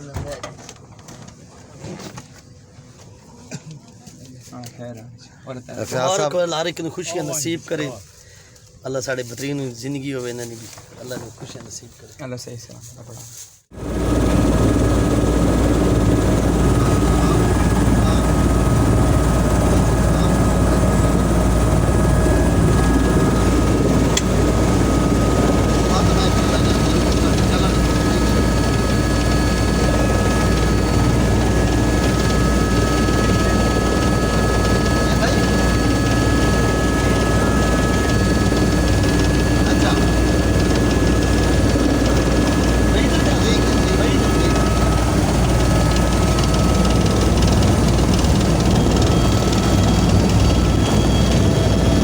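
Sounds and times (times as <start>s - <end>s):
helicopter rotor noise: 13.7s - 52.0s
thin steady whine: 13.8s - 52.0s.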